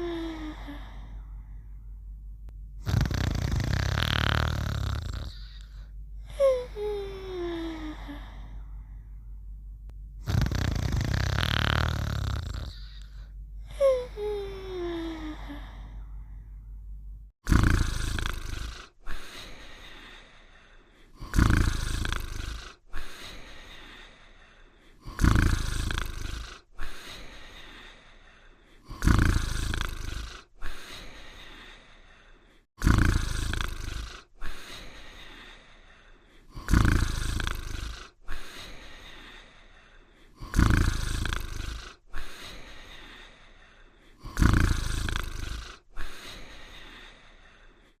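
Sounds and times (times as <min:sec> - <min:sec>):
soft breath: 0:00.0 - 0:02.1, 0:04.9 - 0:09.4, 0:12.5 - 0:16.8, 0:18.6 - 0:21.3, 0:22.2 - 0:25.2, 0:26.1 - 0:29.0, 0:29.8 - 0:32.8, 0:33.7 - 0:48.0
cartoon snoring: 0:02.8 - 0:08.5, 0:10.2 - 0:16.0, 0:17.4 - 0:20.4, 0:21.0 - 0:24.1, 0:24.9 - 0:28.1, 0:28.7 - 0:31.9, 0:32.7 - 0:35.7, 0:36.3 - 0:47.8.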